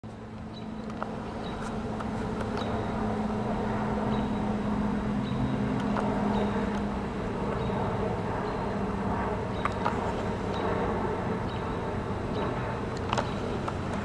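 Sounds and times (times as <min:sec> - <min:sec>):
steady low hum: 0:00.1 - 0:14.0.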